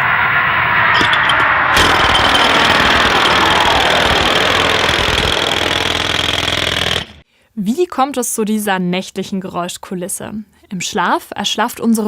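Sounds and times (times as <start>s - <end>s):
jet engine rush and whine: 0.0s - 7.2s
jackhammer pounding: 1.0s - 7.2s.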